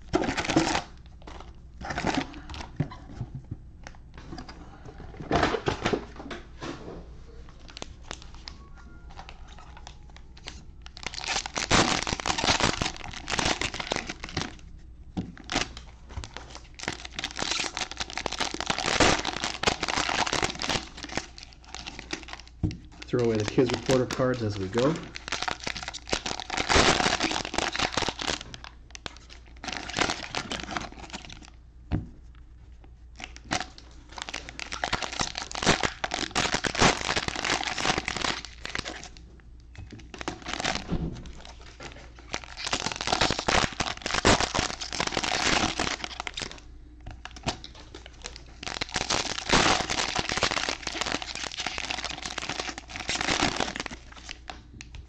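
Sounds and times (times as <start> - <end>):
card packs being torn open: 0.0 - 2.7, 9.2 - 14.6, 15.4 - 31.5, 33.2 - 39.2, 40.0 - 54.8
wrappers crinkling: 7.5 - 14.7, 15.4 - 31.6, 33.2 - 39.2, 40.0 - 46.6, 47.2 - 54.9
cards being handled: 22.8 - 25.1.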